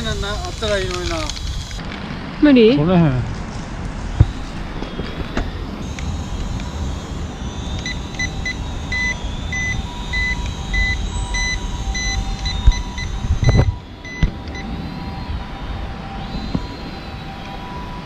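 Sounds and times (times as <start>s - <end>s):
faint motor whine: 0.0s - 1.9s, 3.4s - 18.0s
low wind rumble: 0.0s - 18.0s
short electronic beeps: 5.2s - 17.7s.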